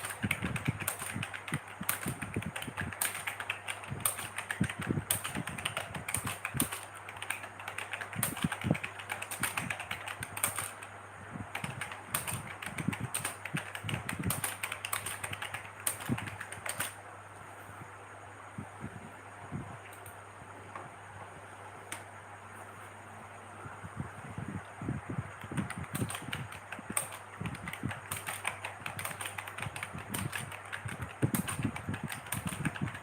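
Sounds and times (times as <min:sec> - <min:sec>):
fast typing on keyboard: 0:00.0 - 0:10.9, 0:11.5 - 0:17.0, 0:25.4 - 0:33.0.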